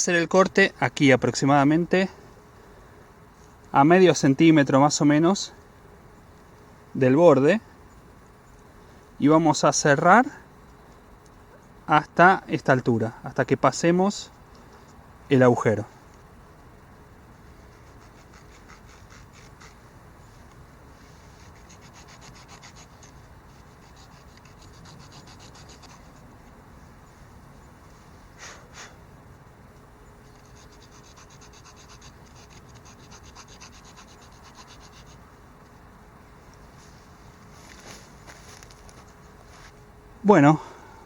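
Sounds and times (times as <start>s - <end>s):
saw cutting wood: 21.3s - 26.2s, 30.4s - 35.1s.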